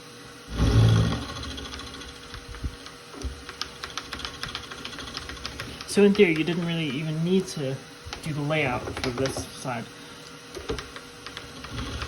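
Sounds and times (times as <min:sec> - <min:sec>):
faint machine hum: 0:00.0 - 0:12.0
milling cutter ticking: 0:01.5 - 0:07.5, 0:08.1 - 0:09.5.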